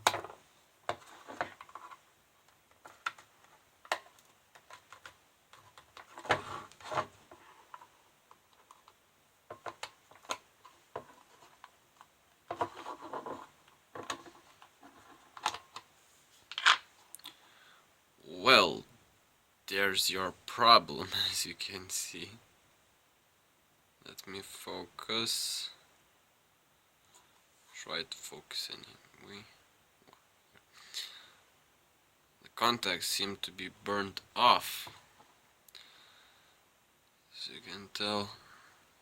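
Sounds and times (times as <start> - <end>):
plastic scraping and rubbing: 0.0 - 2.1, 2.7 - 16.8.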